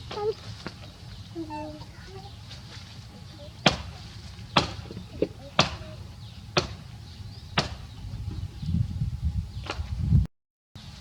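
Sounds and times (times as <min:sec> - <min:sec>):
sharp chopping blows: 0:03.6 - 0:05.0, 0:05.6 - 0:05.9, 0:06.6 - 0:06.8, 0:07.6 - 0:07.9.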